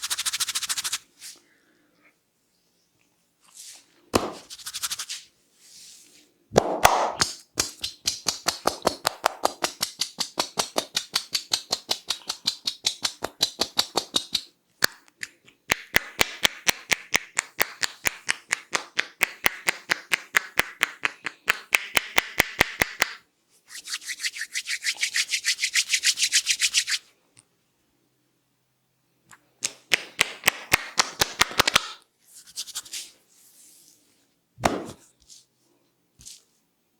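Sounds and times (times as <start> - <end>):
hair rubbing: 3.7 - 5.8, 9.4 - 14.5, 23.7 - 27.0, 32.4 - 33.9
rapid tapping on the head: 6.6 - 14.5, 15.7 - 23.2.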